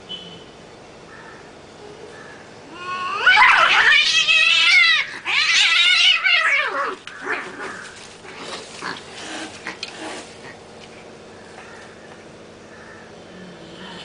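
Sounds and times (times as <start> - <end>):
cat yowling: 2.7 - 7.7.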